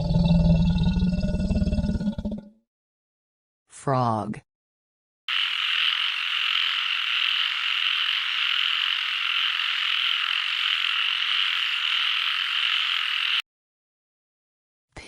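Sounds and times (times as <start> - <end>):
chorus of frogs calling: 5.3 - 13.4.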